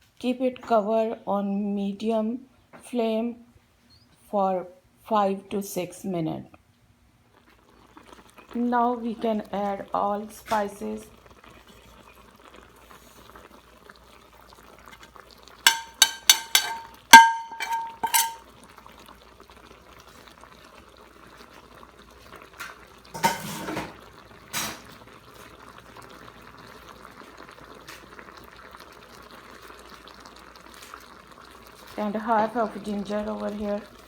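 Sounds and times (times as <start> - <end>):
faint simmering: 7.2 - 34.0
spoon clinking against metal: 15.7 - 18.4.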